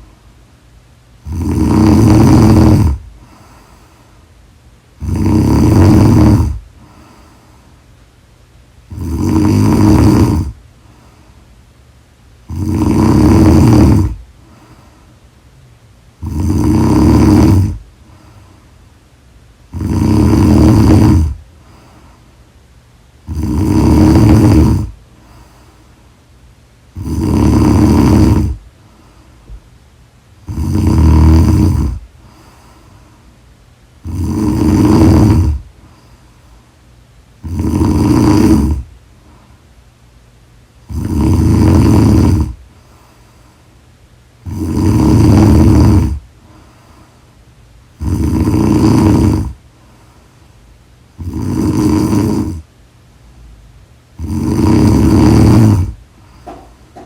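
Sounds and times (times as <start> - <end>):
person snoring: 1.2 - 4.0, 5.0 - 7.5, 8.9 - 11.3, 12.4 - 15.1, 16.2 - 18.6, 19.7 - 22.2, 23.2 - 25.9, 26.9 - 28.6, 30.4 - 33.0, 34.0 - 36.2, 37.4 - 38.9, 40.8 - 43.3, 44.4 - 47.1, 47.9 - 49.6, 51.2 - 52.7, 54.2 - 57.0.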